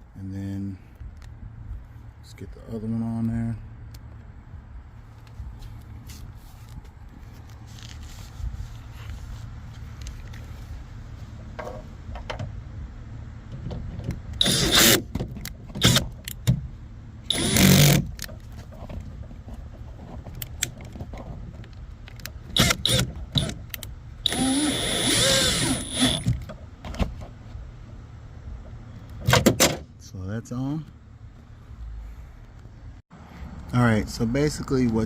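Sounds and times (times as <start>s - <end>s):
power tool buzzing: 14.4s - 15.0s, 17.3s - 18.1s, 22.5s - 23.5s, 24.2s - 26.3s.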